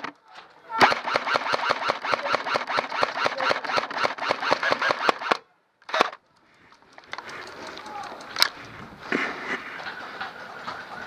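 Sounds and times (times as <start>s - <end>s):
airsoft gun firing bursts: 0.8s - 6.2s.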